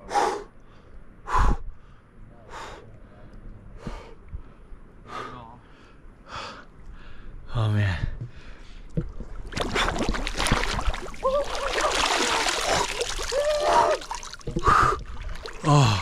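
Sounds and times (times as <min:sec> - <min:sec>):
water splashing and churning: 0:08.9 - 0:16.0
person gasping cries: 0:11.2 - 0:14.1.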